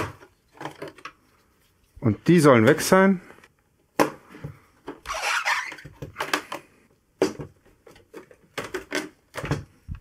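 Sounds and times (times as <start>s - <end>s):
plastic clicks and knocks: 5.8s - 10.0s.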